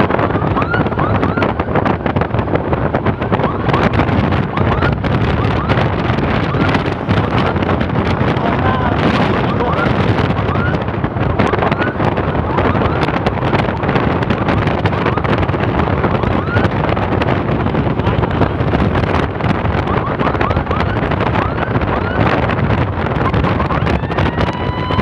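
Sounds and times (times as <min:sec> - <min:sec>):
faint rising siren sweeps: 0:00.0 - 0:02.0, 0:03.0 - 0:13.3, 0:16.0 - 0:16.7, 0:19.8 - 0:22.4, 0:23.2 - 0:25.0
wind buffeting microphone: 0:00.0 - 0:25.0.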